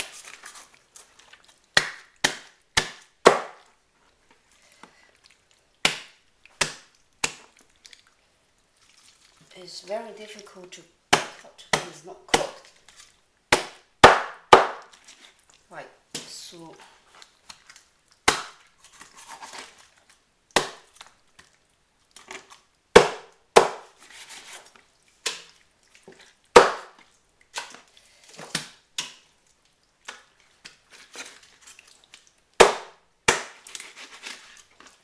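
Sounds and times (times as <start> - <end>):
knife chopping on cutting board: 23.0 - 23.9.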